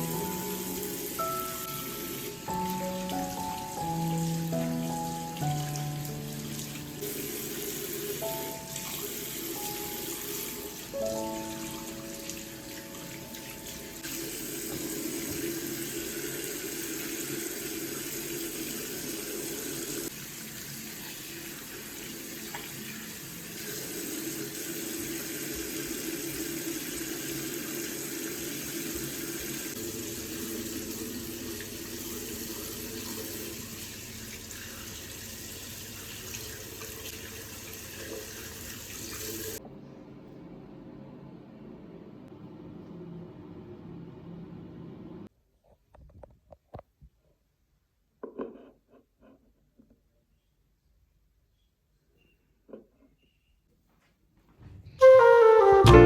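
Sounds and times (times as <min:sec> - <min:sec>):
water running from a tap: 0:00.0 - 0:39.6.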